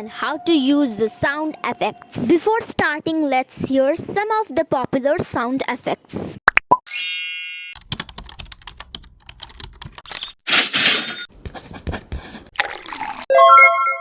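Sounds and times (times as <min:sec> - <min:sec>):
keyboard typing: 0:07.8 - 0:10.2.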